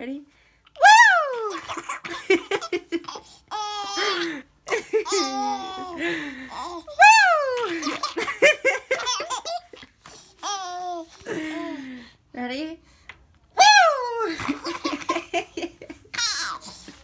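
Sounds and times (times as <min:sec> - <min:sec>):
baby laughing: 0:01.3 - 0:11.1, 0:14.2 - 0:17.0.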